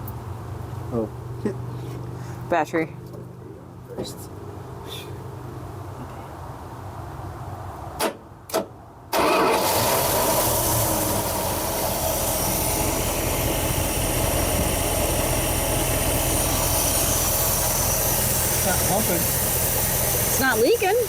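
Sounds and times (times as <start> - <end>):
engine starting and idling: 8.0 - 21.0.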